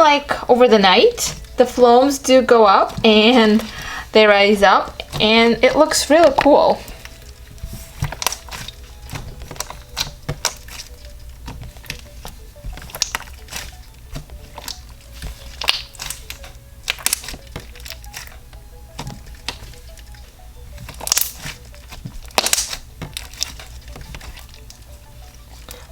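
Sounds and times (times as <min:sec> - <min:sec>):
faint background music: 0:00.0 - 0:25.9
slime crackling and popping: 0:00.0 - 0:25.9.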